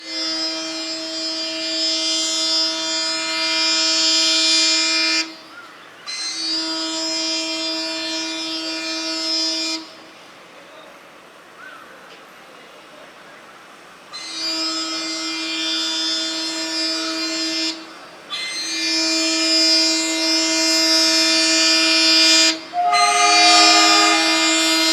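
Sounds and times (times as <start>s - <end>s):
locomotive horn blasts: 22.6s - 24.9s.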